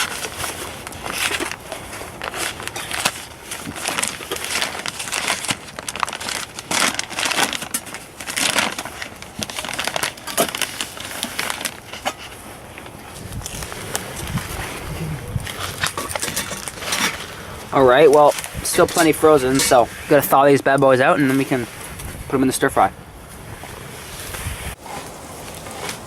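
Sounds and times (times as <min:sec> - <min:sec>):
plastic packaging crinkling: 0:00.0 - 0:19.8.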